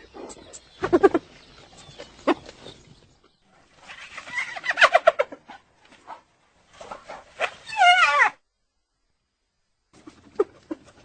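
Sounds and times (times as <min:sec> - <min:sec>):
hyena calling: 0:07.1 - 0:08.4.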